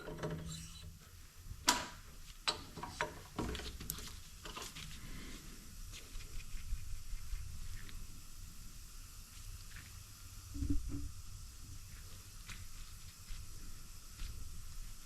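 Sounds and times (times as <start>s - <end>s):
tools clicking and knocking: 0.0s - 0.8s.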